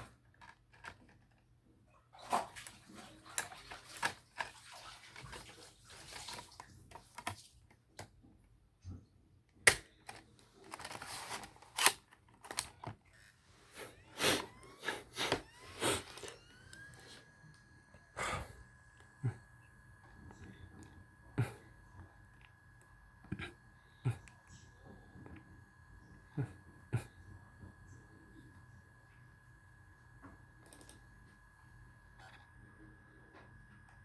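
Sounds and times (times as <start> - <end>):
faint steady tone: 12.4 - 34.0.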